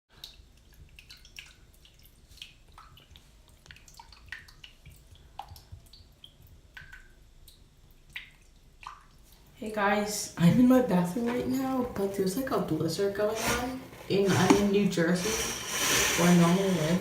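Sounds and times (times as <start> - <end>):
water dripping: 0.1 - 13.3.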